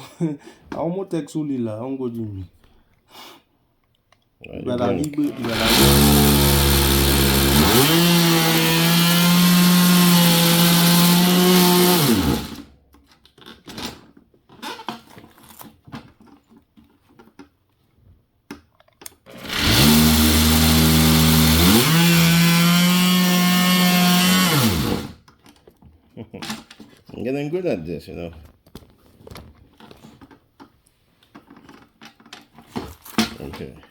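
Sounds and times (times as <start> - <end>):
oscillating multi-tool whining: 5.3 - 12.6, 19.3 - 25.1.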